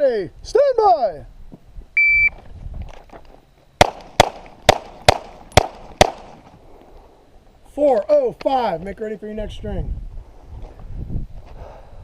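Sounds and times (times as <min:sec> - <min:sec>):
pistol shots: 0:03.8 - 0:06.4.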